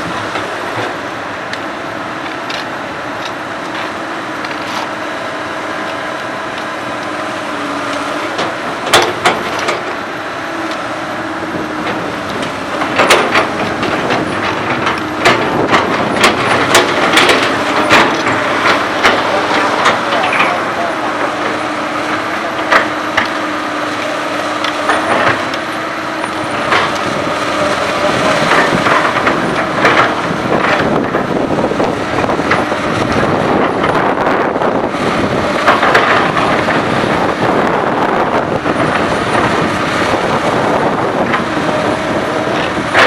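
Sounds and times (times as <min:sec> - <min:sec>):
excavator diesel engine running: 0:00.0 - 0:43.0
metallic clanks and knocks: 0:11.8 - 0:20.6.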